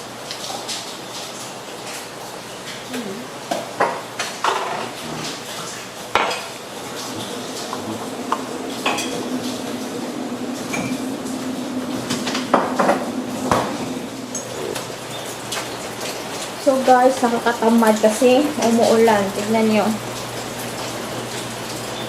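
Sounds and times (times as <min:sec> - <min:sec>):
steady low hum: 0:04.9 - 0:17.0.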